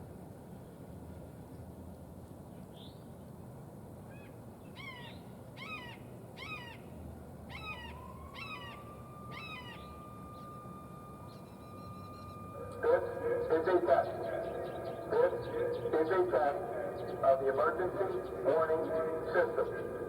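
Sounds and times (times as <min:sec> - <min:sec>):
bird calling: 0:07.5 - 0:19.8
siren tone rising: 0:07.6 - 0:15.9.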